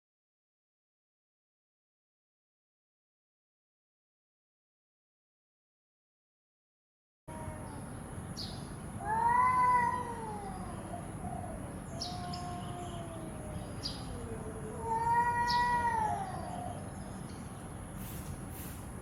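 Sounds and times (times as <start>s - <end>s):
cat meowing: 7.3s - 7.8s, 9.0s - 17.0s.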